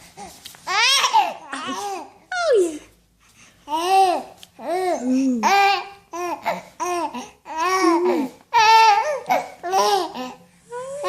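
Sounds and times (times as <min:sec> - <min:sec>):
infant cooing and babbling: 0:03.7 - 0:11.0.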